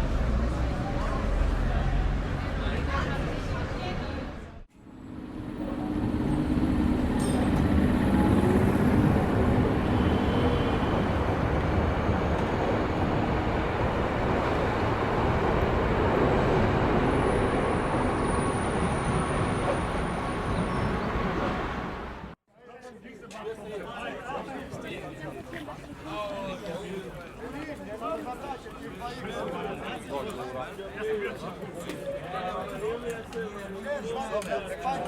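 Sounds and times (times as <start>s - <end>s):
moving vehicle rumble: 0.0s - 22.4s
city ambience: 0.0s - 35.0s.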